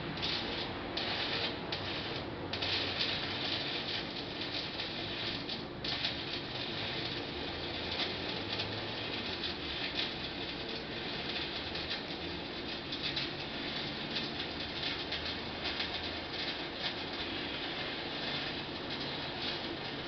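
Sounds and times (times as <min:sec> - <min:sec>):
welding arc crackling: 0:00.0 - 0:20.0.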